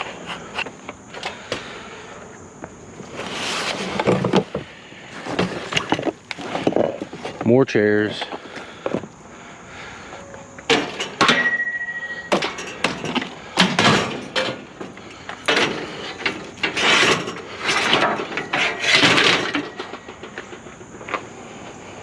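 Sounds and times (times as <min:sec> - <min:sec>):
chairs scraping and rattling: 0:03.0 - 0:07.5, 0:10.2 - 0:22.0
chairs knocking and clanking: 0:03.8 - 0:07.4, 0:10.7 - 0:20.8
metal hit ringing: 0:11.2 - 0:12.6.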